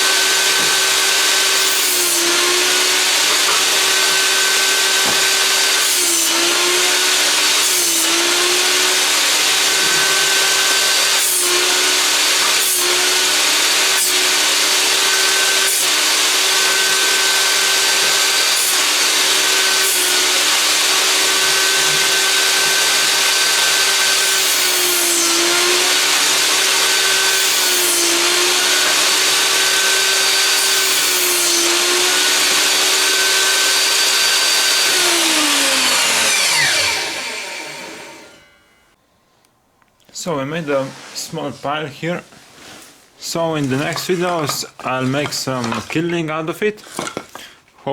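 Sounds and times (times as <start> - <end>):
table saw cutting boards: 0.0 - 38.8
wood pieces knocking: 43.8 - 47.6.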